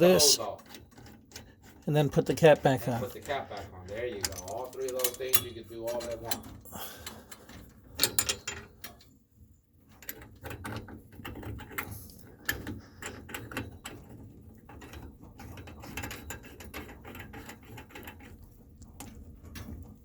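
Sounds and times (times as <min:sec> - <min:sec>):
cap threaded on: 0:00.0 - 0:06.6
hose being unscrewed: 0:00.0 - 0:08.4
clicks and light clatter: 0:00.6 - 0:09.1.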